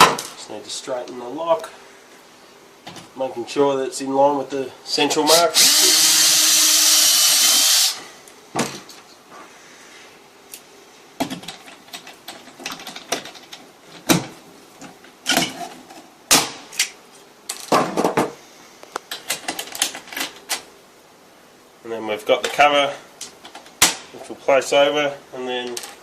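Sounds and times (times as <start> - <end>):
power drill drilling: 5.3 - 8.1.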